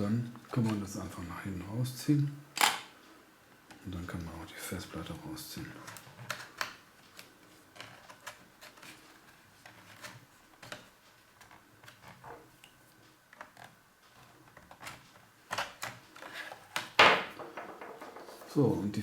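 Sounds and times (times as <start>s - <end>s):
faint clicks and taps: 5.8s - 18.6s
knock: 17.0s - 18.6s.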